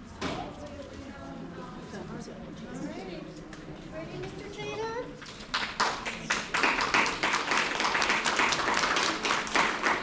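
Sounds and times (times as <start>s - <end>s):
hands clapping in applause: 5.4s - 10.0s.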